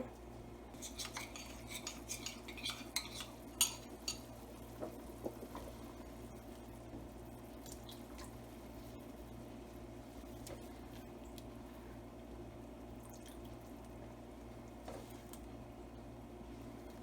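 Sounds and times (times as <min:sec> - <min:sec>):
metal utensil scraping pan: 0:00.8 - 0:04.2.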